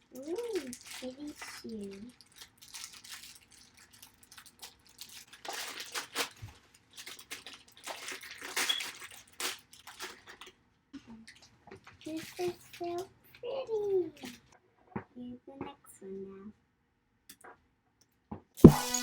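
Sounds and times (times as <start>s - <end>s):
plastic wrappers crinkling and tearing: 0.0s - 13.1s.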